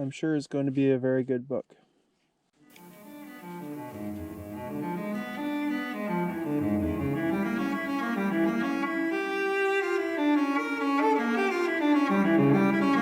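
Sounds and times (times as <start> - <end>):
cello playing slow notes: 2.8 - 13.0.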